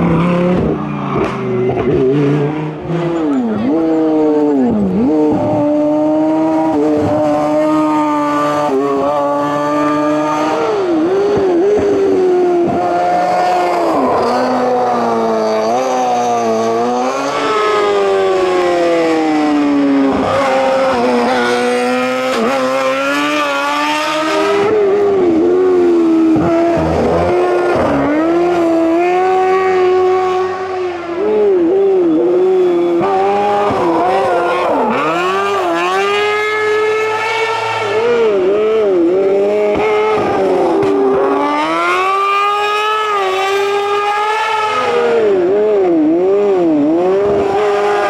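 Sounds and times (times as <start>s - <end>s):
race car engine revving: 0.0s - 48.0s.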